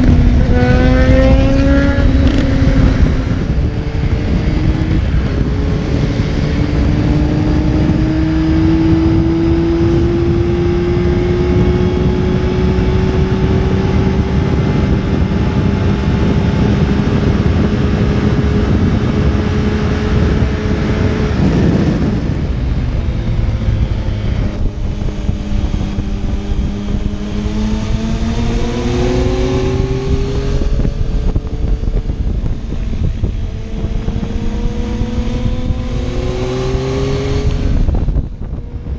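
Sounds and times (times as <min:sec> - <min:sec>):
motorcycle engine accelerating: 0:00.0 - 0:38.9
wind rush on microphone: 0:00.0 - 0:38.9.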